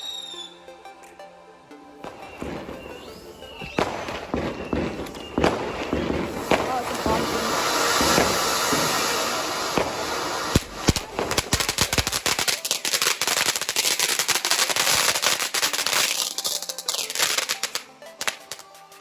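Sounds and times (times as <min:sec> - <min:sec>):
firework hissing and crackling: 0:02.0 - 0:19.0.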